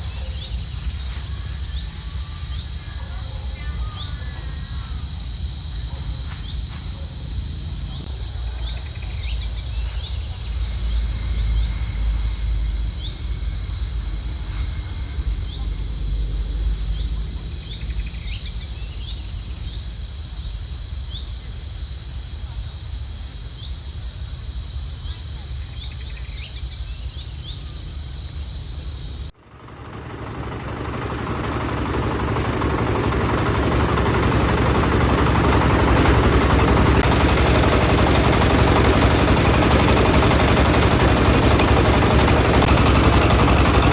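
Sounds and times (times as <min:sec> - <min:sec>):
birds chirping: 0:00.0 - 0:22.9, 0:23.6 - 0:43.9
insects trilling: 0:00.0 - 0:43.9
loud engine-driven machine: 0:29.3 - 0:43.9.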